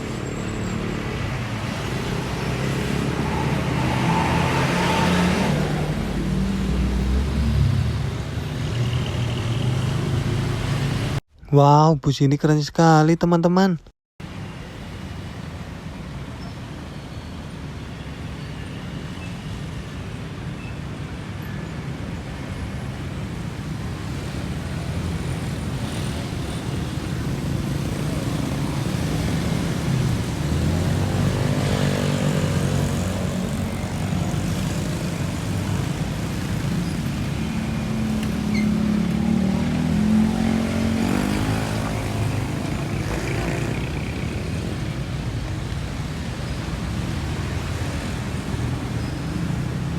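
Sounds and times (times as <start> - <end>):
bus engine passing by: 0.0 - 11.2, 22.7 - 49.9
road traffic noise: 0.0 - 11.2, 14.2 - 49.9.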